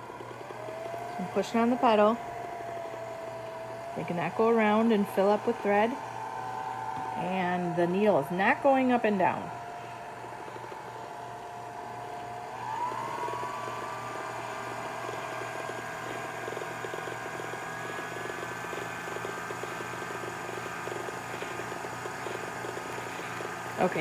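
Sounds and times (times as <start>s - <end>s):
sewing machine motor whining: 0.0s - 24.0s.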